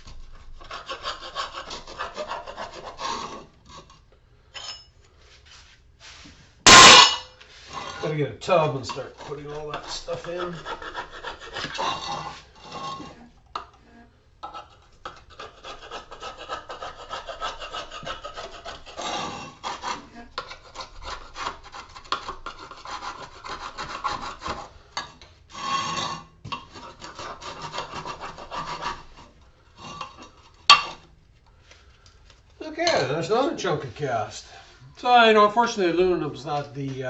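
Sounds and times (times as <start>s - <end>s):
hand tool rasping workpiece: 0.4s - 3.9s, 6.7s - 13.8s, 14.4s - 31.1s.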